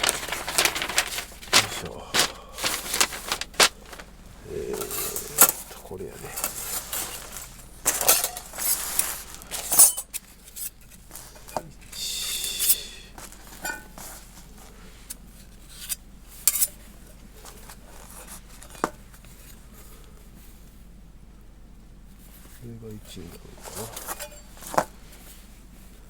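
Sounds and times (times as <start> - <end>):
metal plates clinking and scraping: 0.0 - 4.0, 6.4 - 10.2, 23.7 - 24.8.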